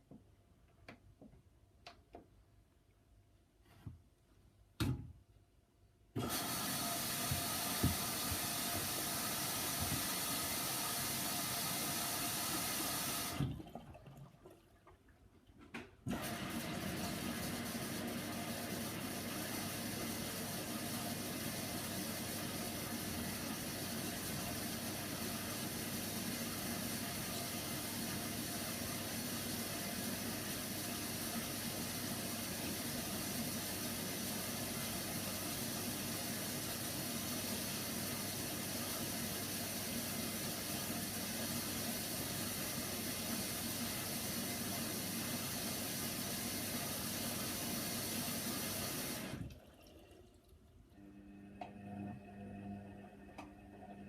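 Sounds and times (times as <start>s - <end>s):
water hissing into washer drum: 6.2s - 14.2s, 16.1s - 50.4s.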